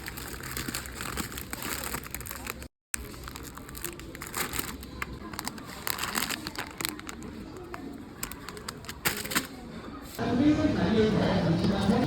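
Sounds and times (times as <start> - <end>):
crinkling and clicking handling noise: 0.0 - 9.6
faint voices murmuring: 3.3 - 12.0.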